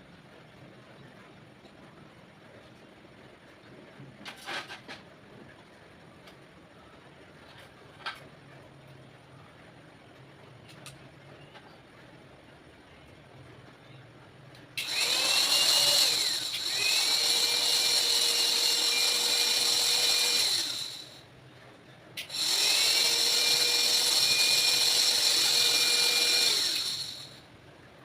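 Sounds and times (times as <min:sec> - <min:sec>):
electric mixer motor whining: 0:14.8 - 0:21.2, 0:22.2 - 0:27.4.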